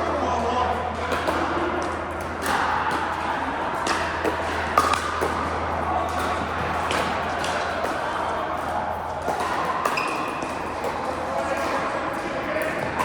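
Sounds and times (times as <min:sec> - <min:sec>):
paddles striking ball: 0:01.1 - 0:08.4.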